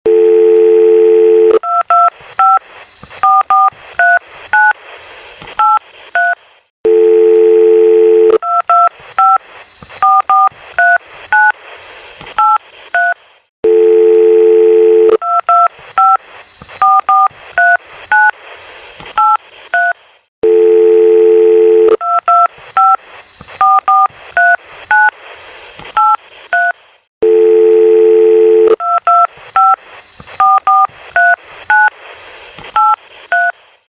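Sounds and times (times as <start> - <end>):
telephone dial tone: 0.1 - 1.9, 6.9 - 8.7, 13.6 - 15.4, 20.4 - 22.3, 27.2 - 29.3.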